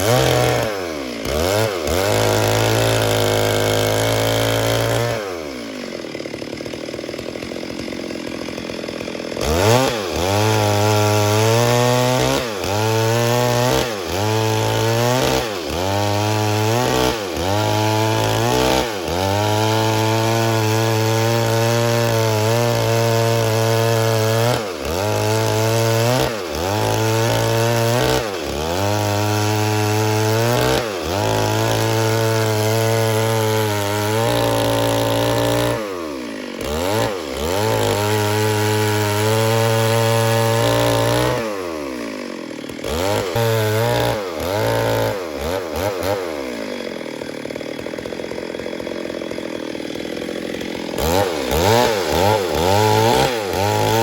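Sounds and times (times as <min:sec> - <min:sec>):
chainsaw running: 0:00.0 - 0:54.0.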